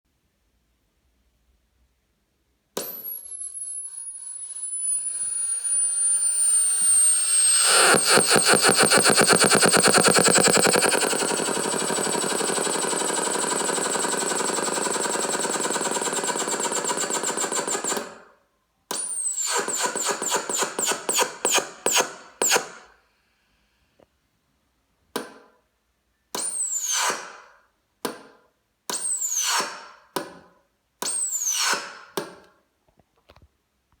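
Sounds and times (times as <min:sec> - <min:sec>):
high whine falling in pitch: 0:04.7 - 0:14.8
machine rattling: 0:07.4 - 0:18.0.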